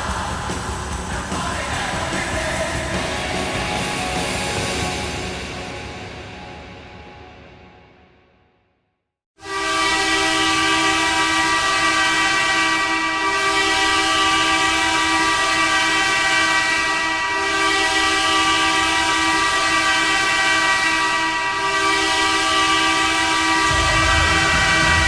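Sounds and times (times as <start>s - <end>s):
air horn long blast: 9.4s - 25.0s.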